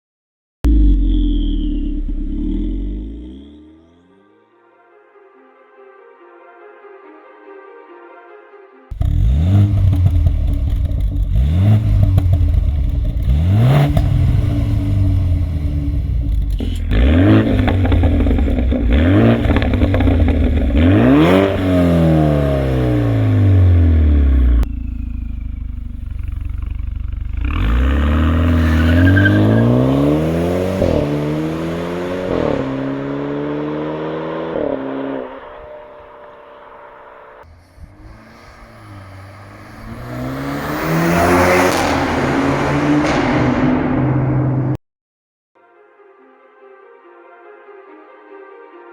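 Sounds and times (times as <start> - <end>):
car engine revving: 0.6 - 4.3, 8.9 - 44.8
car engine idling: 9.0 - 21.8, 22.7 - 33.3, 35.5 - 42.6.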